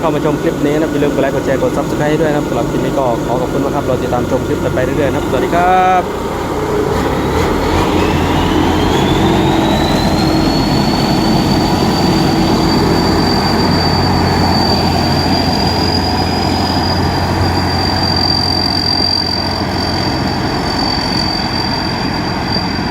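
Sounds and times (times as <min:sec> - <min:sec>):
combine harvester diesel engine: 0:00.0 - 0:22.9
high whine: 0:00.0 - 0:22.9.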